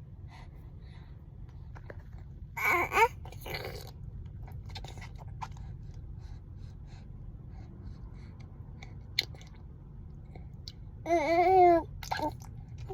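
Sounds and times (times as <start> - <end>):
steady low rumble: 0.0 - 12.9
baby mouth smacks and clicks: 9.1 - 9.6.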